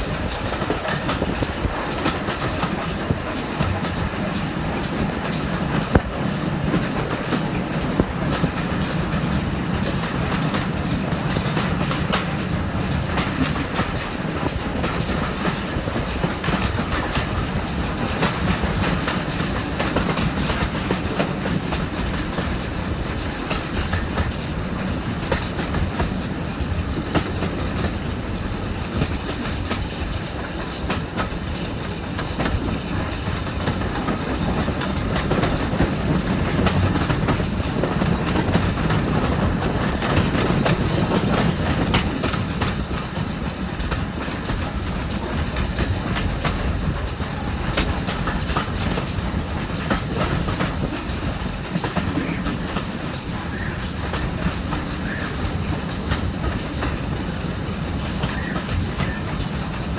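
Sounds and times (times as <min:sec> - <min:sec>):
steam locomotive exhaust: 0:00.0 - 0:59.9
wheels clicking over rail joints: 0:00.0 - 0:59.9.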